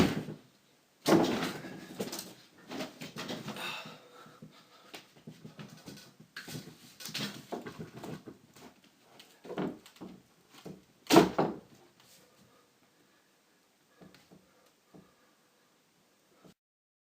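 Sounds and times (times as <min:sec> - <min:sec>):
thud: 0:01.0 - 0:02.1, 0:11.1 - 0:11.7
clothes rustling against door: 0:04.2 - 0:12.4.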